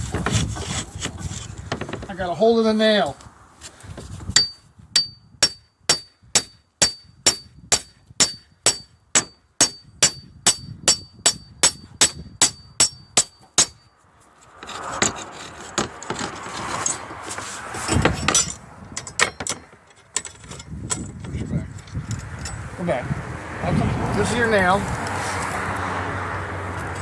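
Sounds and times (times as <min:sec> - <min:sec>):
metal grinding on slate: 0:00.0 - 0:02.1, 0:14.4 - 0:22.7.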